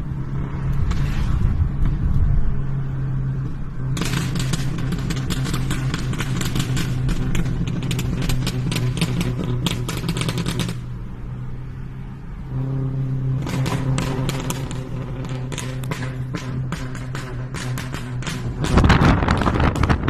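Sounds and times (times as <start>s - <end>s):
rapid irregular popping and clicking: 4.0s - 10.9s, 13.5s - 20.0s.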